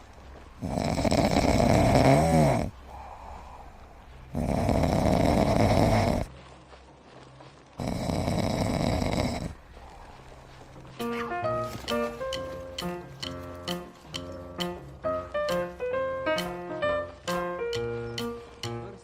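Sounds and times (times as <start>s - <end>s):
pet snoring: 0.6s - 2.8s, 4.3s - 6.3s, 7.8s - 9.6s.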